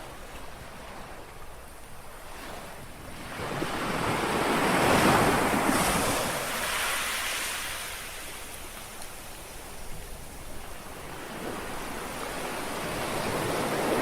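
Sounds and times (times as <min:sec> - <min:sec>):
small sea wave washing ashore: 0:03.2 - 0:14.0.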